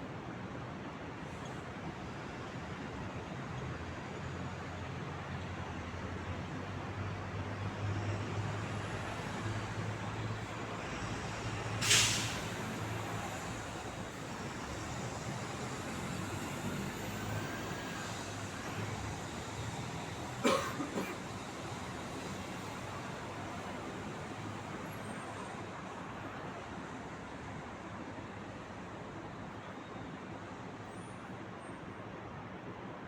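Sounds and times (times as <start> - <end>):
street traffic: 0.0 - 33.0
air-brake hisses: 11.8 - 13.5.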